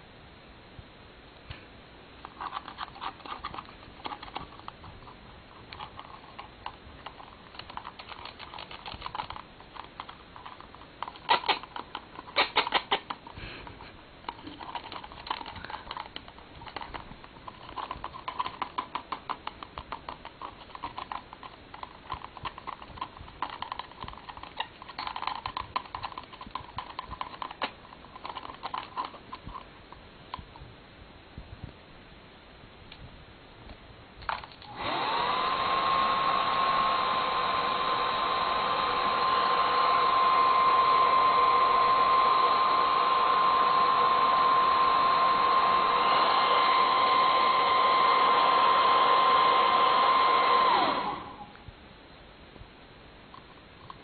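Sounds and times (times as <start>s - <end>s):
cockatoo clicking: 2.2s - 29.7s.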